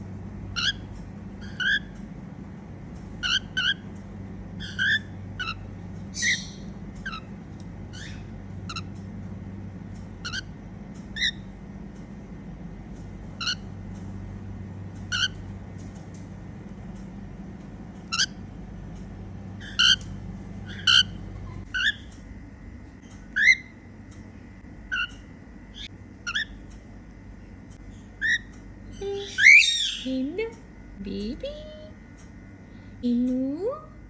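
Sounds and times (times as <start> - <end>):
steady low hum: 0.0 - 34.0
cockatiel chirping: 0.6 - 1.9, 3.2 - 3.8, 4.6 - 7.3, 10.2 - 11.5, 13.4 - 13.7, 15.1 - 15.4, 18.1 - 18.4, 19.6 - 22.1, 23.4 - 23.7, 24.9 - 25.2, 25.8 - 26.6, 28.2 - 28.5, 29.2 - 30.0.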